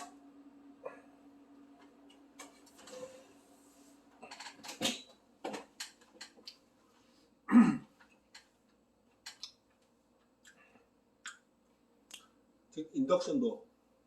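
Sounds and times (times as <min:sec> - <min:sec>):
cooktop electrical hum: 0:00.0 - 0:14.0
chewing and mouth clicks: 0:09.3 - 0:09.6, 0:10.4 - 0:11.5.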